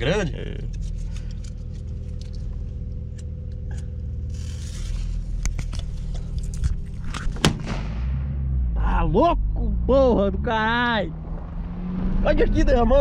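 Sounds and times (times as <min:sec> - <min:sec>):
car engine idling: 0:00.0 - 0:04.3.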